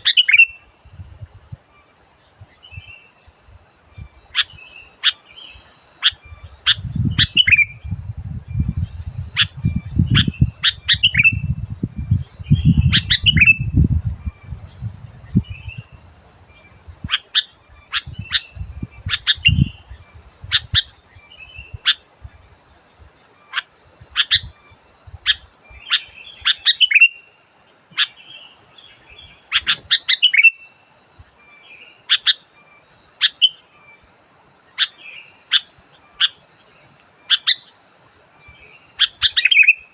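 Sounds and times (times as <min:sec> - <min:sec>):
bird chirping: 0:00.0 - 0:00.7, 0:01.7 - 0:22.6, 0:23.3 - 0:34.1, 0:34.7 - 0:37.8, 0:38.4 - 0:39.9
low rumble: 0:11.3 - 0:17.1.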